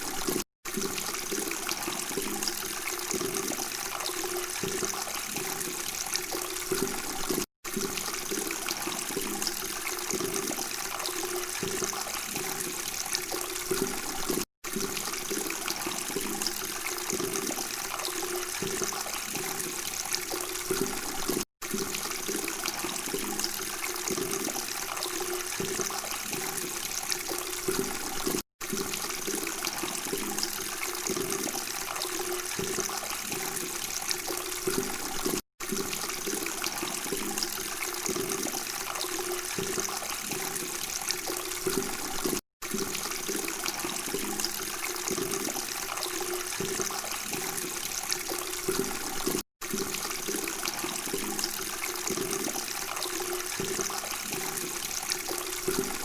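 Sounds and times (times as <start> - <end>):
water flowing and babbling: 0.0 - 56.0.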